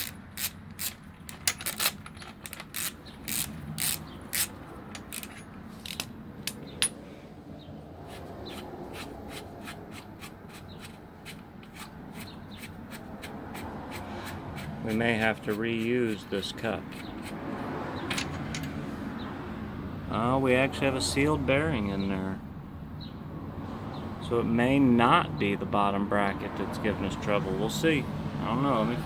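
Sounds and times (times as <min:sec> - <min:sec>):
ratchet clicking and metal clinking: 0:00.0 - 0:07.0, 0:18.0 - 0:18.8.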